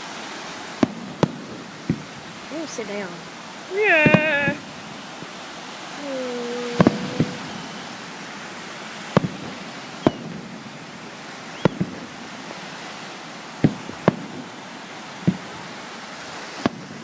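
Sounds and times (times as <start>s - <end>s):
steady hiss: 0.0s - 17.0s
fireworks bangs: 0.8s - 2.8s, 3.7s - 5.0s, 6.0s - 8.2s, 9.0s - 12.6s, 13.5s - 14.6s, 15.2s - 15.7s.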